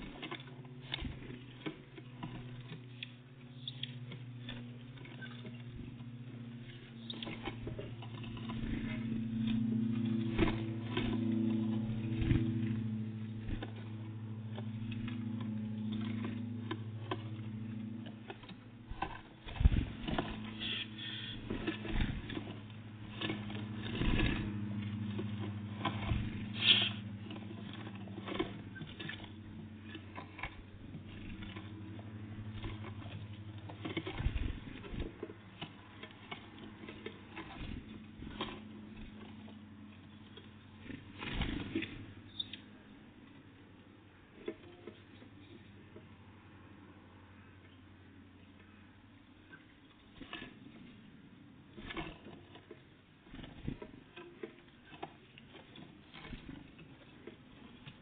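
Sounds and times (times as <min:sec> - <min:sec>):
small birds pecking at seed: 0:00.0 - 0:42.8
steady low hum: 0:00.0 - 0:58.0.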